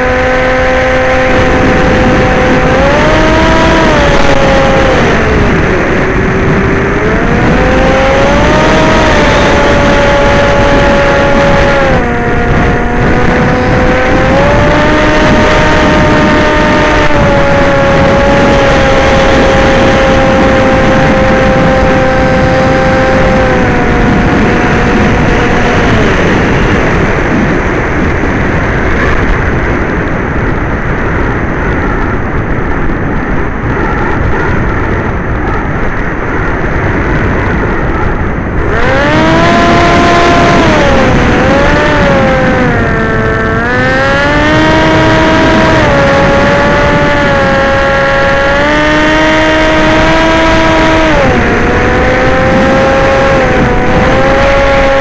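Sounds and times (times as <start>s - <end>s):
model aircraft motor whine: 0.0s - 27.0s, 38.6s - 55.0s
wind rush on microphone: 0.0s - 55.0s.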